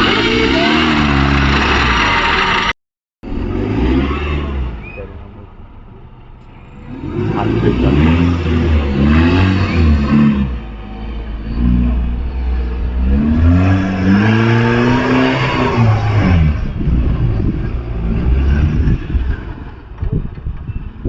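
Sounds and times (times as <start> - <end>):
off-road engine revving: 0.0 - 5.6, 6.4 - 20.3.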